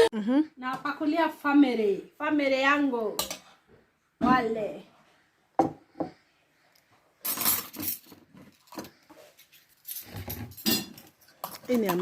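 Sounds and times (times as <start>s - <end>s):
plates and cutlery clinking: 7.3s - 12.0s.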